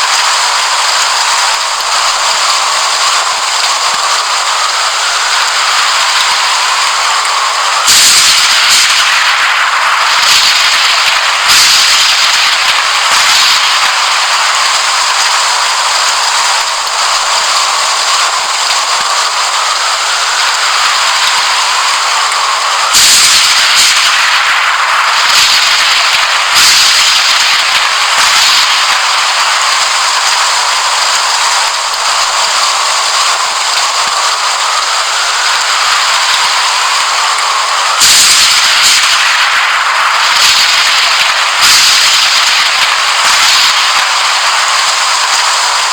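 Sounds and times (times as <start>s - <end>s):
heavy rain: 0.0s - 45.9s
thunder cracks: 3.0s - 45.9s.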